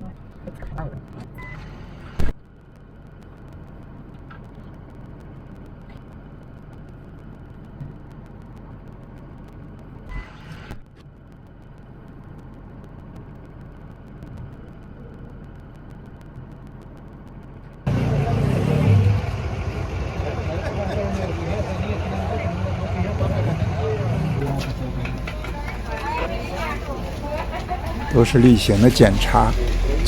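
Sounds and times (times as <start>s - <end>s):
vehicle engines rumbling: 11.6s - 30.0s.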